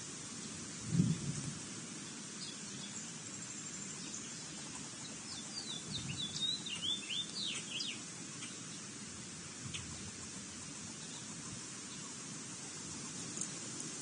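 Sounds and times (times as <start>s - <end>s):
steady outdoor hiss: 0.0s - 14.0s
small bird chirping: 2.4s - 8.8s.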